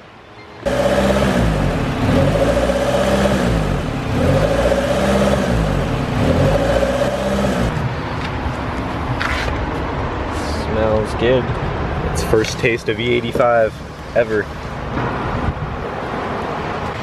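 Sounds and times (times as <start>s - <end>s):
car engine revving in waves: 0.6s - 8.0s.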